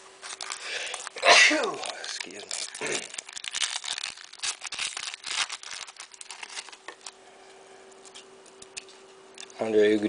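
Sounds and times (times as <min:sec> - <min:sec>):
faint steady hum: 0:00.0 - 0:10.0
card wrapper crinkling: 0:00.2 - 0:07.2.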